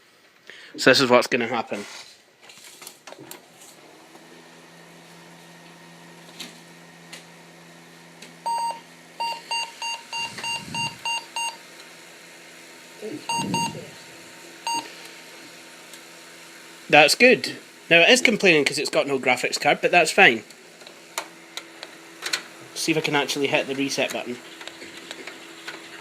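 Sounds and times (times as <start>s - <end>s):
computer low hum: 3.4s - 12.3s, 13.0s - 26.0s
motherboard speaker beeps: 8.5s - 11.6s, 13.3s - 14.0s, 14.7s - 14.9s.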